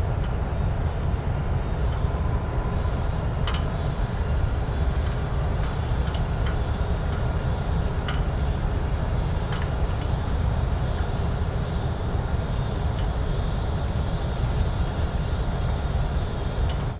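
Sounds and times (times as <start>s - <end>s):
faint clicks and knocks: 8.0s - 8.3s.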